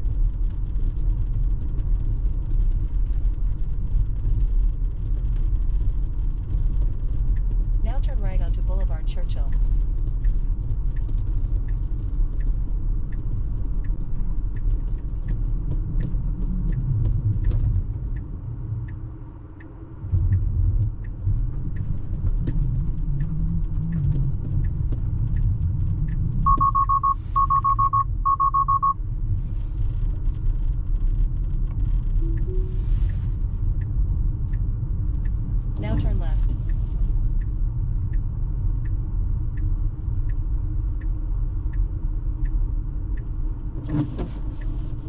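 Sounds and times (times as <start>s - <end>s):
road and tyre rumble: 0.0s - 45.0s
turn signal ticking: 0.0s - 45.0s
short beeps: 26.5s - 29.0s.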